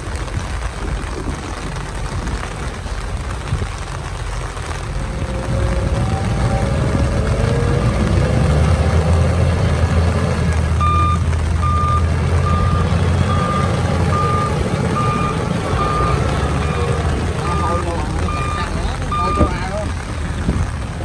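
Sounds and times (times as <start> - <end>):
diesel vehicle engine rumble: 0.0 - 21.0
reversing alarm beeps: 10.8 - 19.6.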